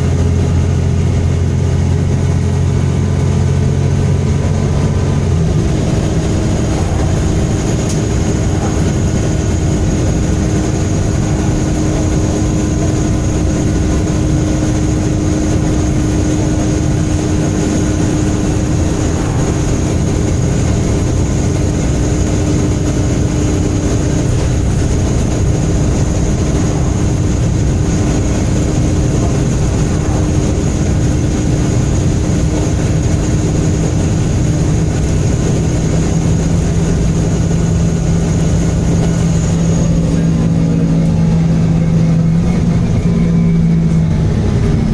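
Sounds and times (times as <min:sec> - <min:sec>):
bus diesel engine rumbling: 0:00.0 - 0:44.9
steady humming tone: 0:00.0 - 0:44.9.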